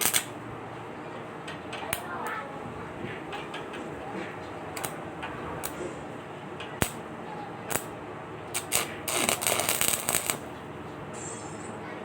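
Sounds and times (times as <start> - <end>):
welding arc crackling: 0.0 - 0.4, 4.8 - 5.0, 5.6 - 5.8, 7.7 - 7.9, 8.5 - 10.6.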